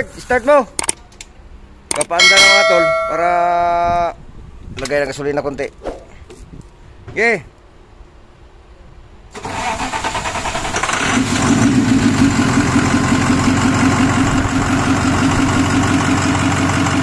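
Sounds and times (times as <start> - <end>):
bus engine starting and running: 9.3 - 17.0.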